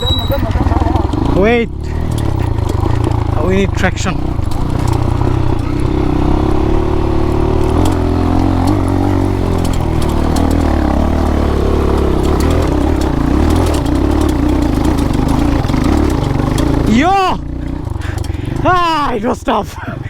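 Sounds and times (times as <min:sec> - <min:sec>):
dirt bike engine at low revs: 0:00.0 - 0:20.0
clicks and rattles: 0:00.2 - 0:03.4, 0:04.3 - 0:06.0, 0:07.4 - 0:16.9.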